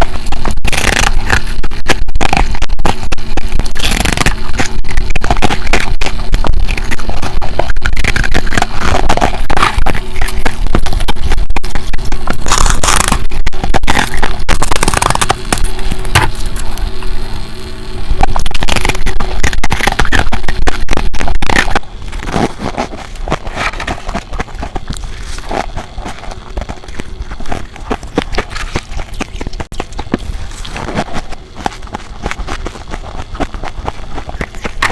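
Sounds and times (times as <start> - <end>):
crunching ice: 0.0 - 17.2, 18.1 - 34.9.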